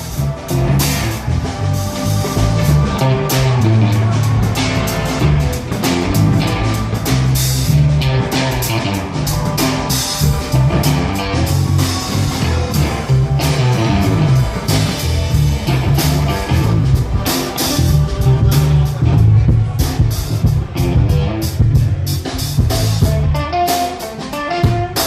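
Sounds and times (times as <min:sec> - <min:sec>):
bass line: 0:00.0 - 0:25.0
drums and cymbals: 0:00.0 - 0:25.0
guitar: 0:00.0 - 0:25.0.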